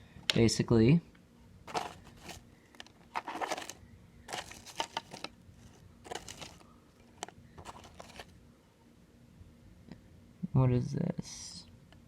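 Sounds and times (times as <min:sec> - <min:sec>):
hands rummaging small objects: 0:01.7 - 0:08.3.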